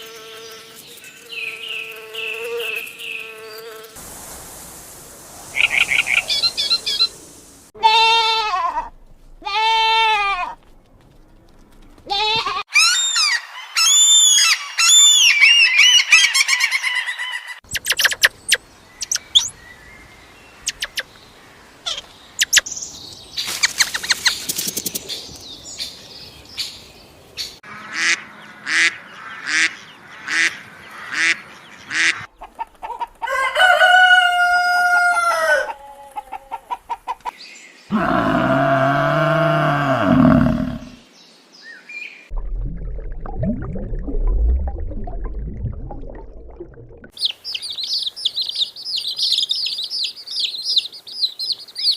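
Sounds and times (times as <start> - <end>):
chirping calls: 12.8 - 19.6, 20.5 - 21.2, 21.8 - 26.8, 47.2 - 51.9
hen clucking: 31.2 - 33.4, 35.1 - 37.4
rooster crowing: 33.2 - 36.2.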